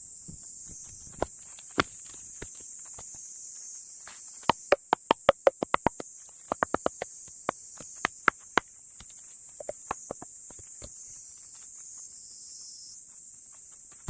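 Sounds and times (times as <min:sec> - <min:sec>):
insects chirring: 0:00.6 - 0:14.0
wooden logs clacking: 0:04.5 - 0:10.9.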